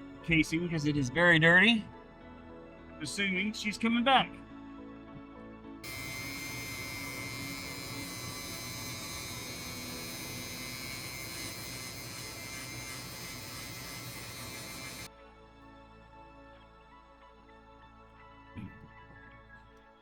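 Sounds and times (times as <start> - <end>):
electric tool buzzing: 5.8 - 15.1.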